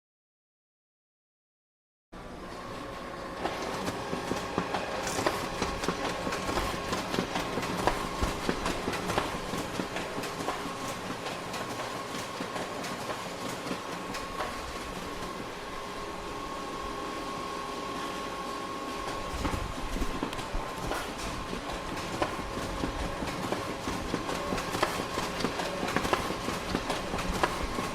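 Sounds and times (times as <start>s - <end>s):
photocopier whirring: 2.2s - 27.9s
photocopier clicking clatter: 19.4s - 27.9s.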